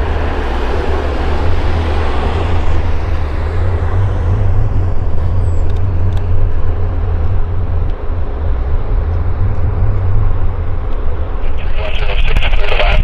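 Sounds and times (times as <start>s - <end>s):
engine roar: 0.0s - 13.0s
low rumble: 0.0s - 13.0s.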